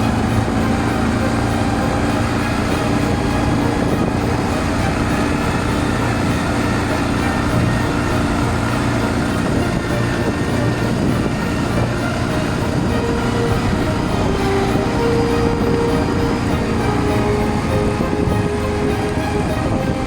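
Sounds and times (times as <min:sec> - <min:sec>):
quad bike engine running: 0:00.0 - 0:20.0.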